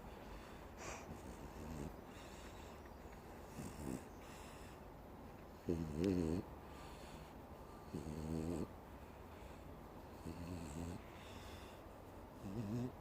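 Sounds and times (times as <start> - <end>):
pet snoring: 1.1 - 2.4, 3.5 - 4.6, 5.6 - 6.5, 7.8 - 8.7, 10.1 - 11.7, 12.4 - 13.0.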